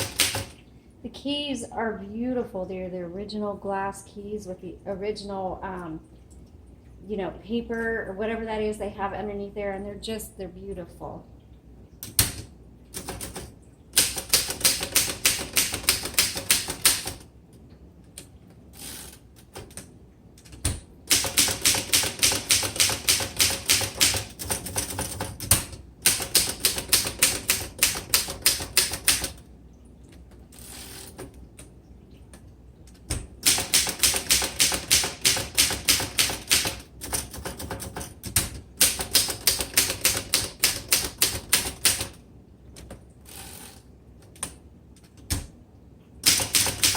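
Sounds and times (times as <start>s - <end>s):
manual typewriter typing: 0.0s - 0.6s, 12.0s - 17.3s, 18.1s - 29.4s, 32.9s - 42.2s, 46.2s - 46.9s.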